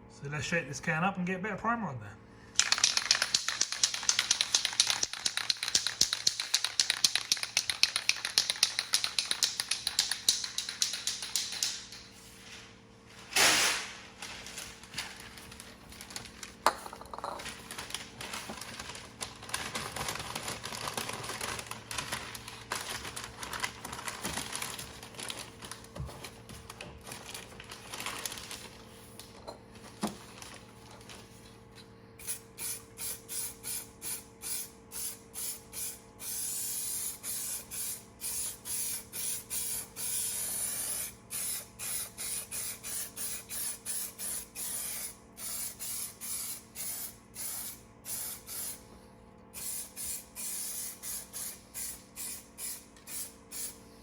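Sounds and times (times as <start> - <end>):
aerosol can spraying: 2.6 - 11.9, 32.2 - 48.8, 49.6 - 53.8.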